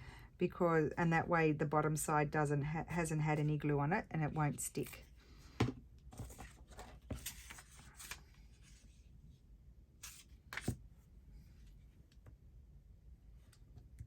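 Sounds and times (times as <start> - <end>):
paper rustling: 6.1 - 8.9.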